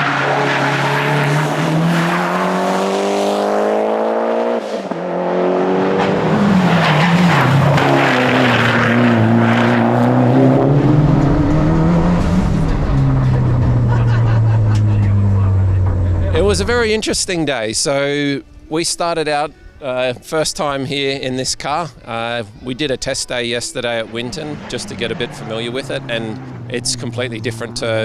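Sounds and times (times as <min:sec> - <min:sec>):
rally car engine accelerating: 0:00.0 - 0:17.5, 0:23.1 - 0:28.0.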